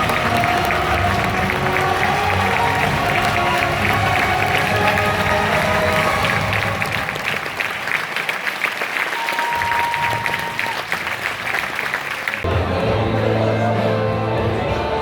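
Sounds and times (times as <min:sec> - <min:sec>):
music: 0:00.0 - 0:07.8, 0:12.4 - 0:15.0
audience applauding: 0:00.0 - 0:12.5.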